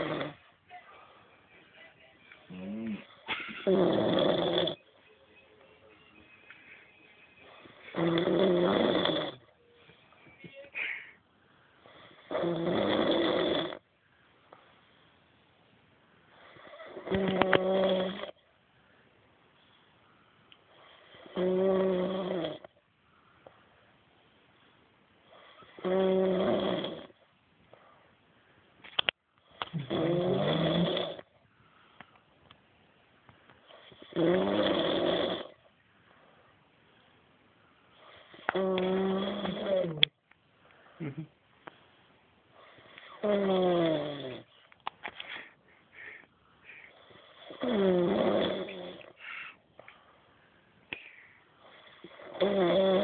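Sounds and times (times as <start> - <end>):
woman snoring: 0.0 - 0.4, 2.5 - 4.8, 7.5 - 9.5, 12.0 - 13.8, 16.4 - 18.4, 20.8 - 22.7, 25.4 - 27.2, 29.8 - 31.2, 33.9 - 35.6, 38.2 - 40.0, 43.0 - 44.5, 46.9 - 49.2, 51.7 - 53.0.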